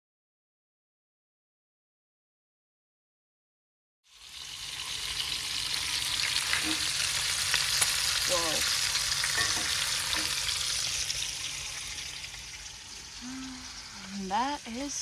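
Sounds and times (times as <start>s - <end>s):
bacon sizzling in a pan: 4.1s - 15.0s.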